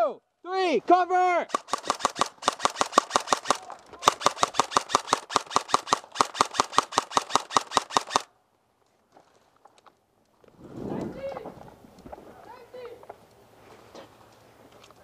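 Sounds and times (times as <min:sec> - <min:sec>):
airsoft gun full-auto fire: 0:01.5 - 0:08.3.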